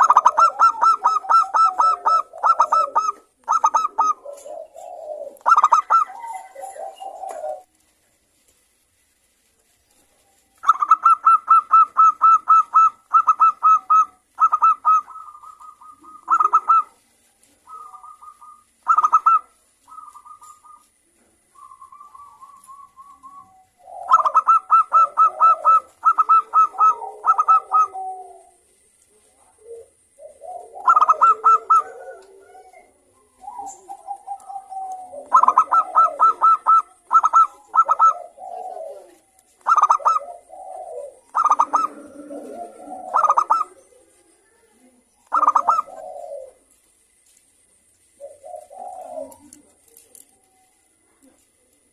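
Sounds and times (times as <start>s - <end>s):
dove cooing: 0.0s - 7.9s, 9.9s - 51.9s.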